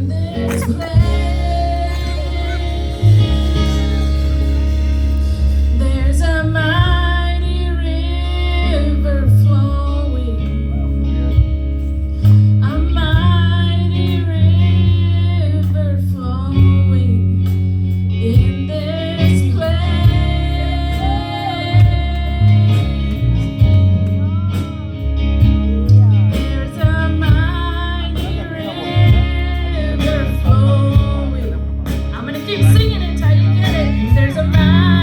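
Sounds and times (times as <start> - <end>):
person singing: 0.0 - 4.6, 18.4 - 23.5, 26.5 - 35.0
guitar: 0.0 - 35.0
held bass notes: 0.0 - 35.0.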